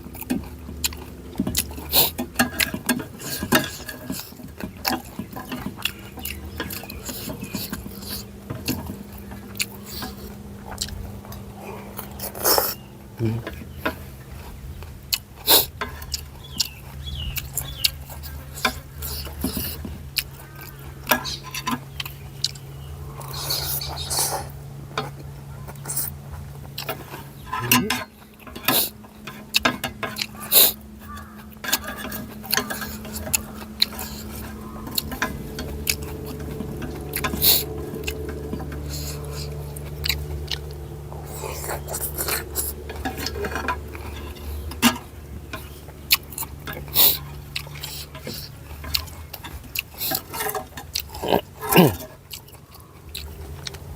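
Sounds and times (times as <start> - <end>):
slurps: 0.0 - 29.0, 32.5 - 53.9
person chewing: 0.0 - 53.9
steady low hum: 0.0 - 53.9
utensils clicking on a bowl: 26.7 - 53.8.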